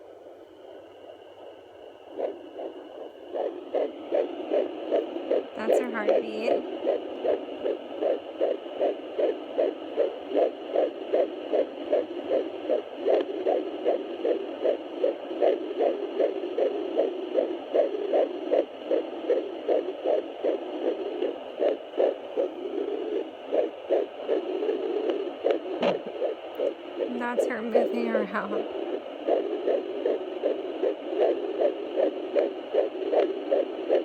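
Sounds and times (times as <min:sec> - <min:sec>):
fetal heartbeat on doppler: 0:00.6 - 0:34.0.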